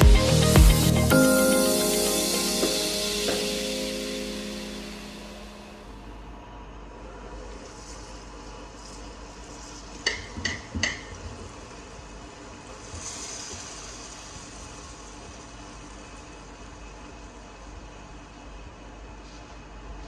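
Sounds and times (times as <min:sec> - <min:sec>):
background hiss: 0:00.0 - 0:06.2.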